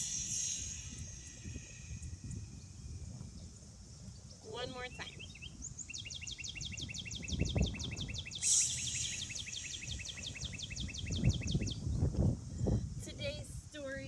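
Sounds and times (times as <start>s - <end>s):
brief hiss: 0.0s - 2.3s, 8.4s - 10.1s
songbird trilling: 0.0s - 12.1s.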